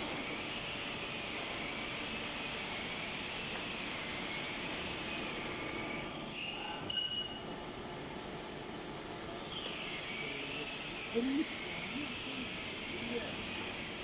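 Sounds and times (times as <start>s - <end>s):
high metallic squeals: 6.2s - 7.4s
lathe running: 9.4s - 14.0s.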